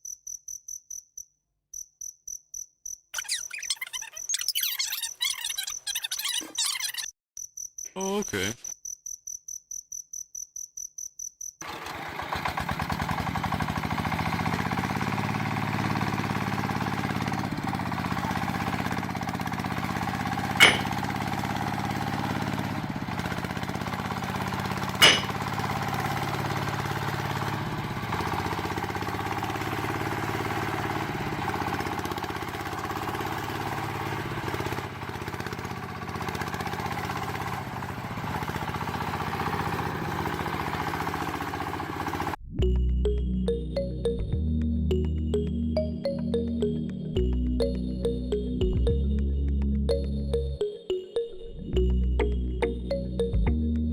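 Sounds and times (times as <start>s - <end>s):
cricket chirping: 0.0s - 5.9s, 7.4s - 11.6s
engine running: 11.6s - 53.8s.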